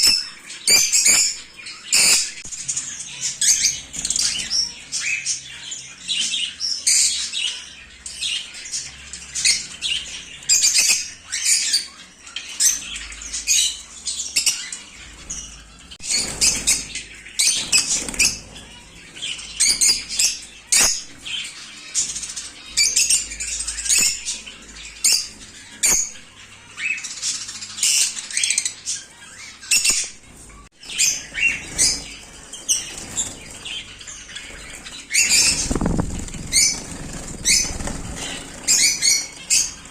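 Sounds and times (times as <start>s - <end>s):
parrots chirping and squawking: 0.0s - 39.9s
wings flapping: 31.5s - 39.9s.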